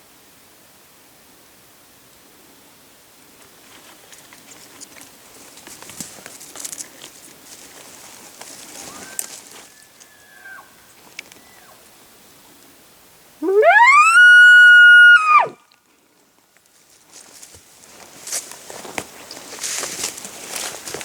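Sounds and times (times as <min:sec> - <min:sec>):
rustling: 0:03.4 - 0:10.2, 0:16.5 - 0:21.0
elk bugling: 0:13.4 - 0:15.6.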